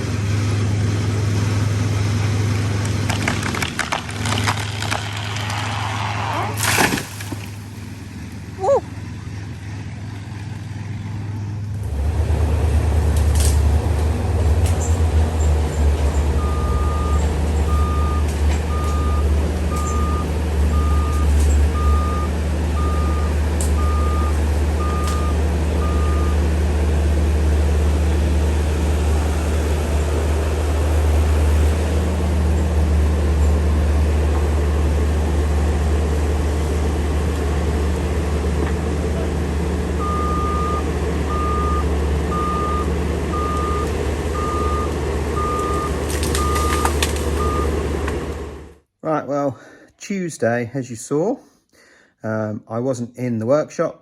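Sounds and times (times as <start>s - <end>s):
heavy diesel machinery rumbling: 0.0s - 48.9s
sharp cracks: 2.8s - 7.7s, 45.9s - 47.4s
reversing alarm beeping: 16.4s - 26.4s, 40.0s - 47.8s.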